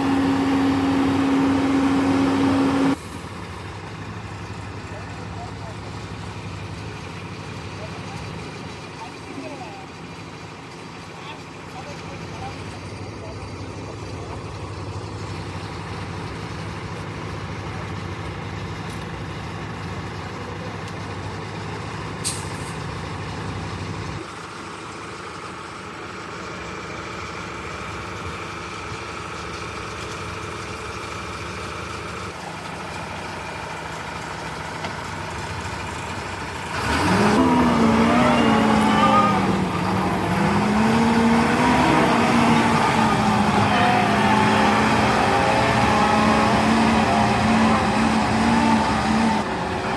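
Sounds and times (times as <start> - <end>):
loud engine revving: 0.0 - 3.0, 36.2 - 49.9
truck engine running: 0.0 - 49.9.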